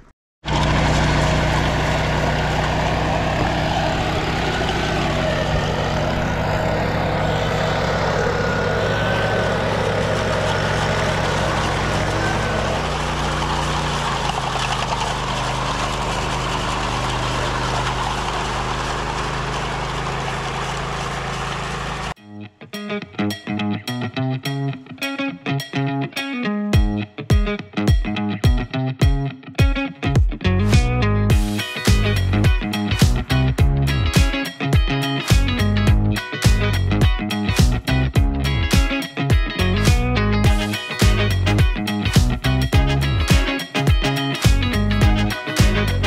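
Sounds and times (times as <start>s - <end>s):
large engine running: 0.4s - 22.2s, 30.6s - 46.0s.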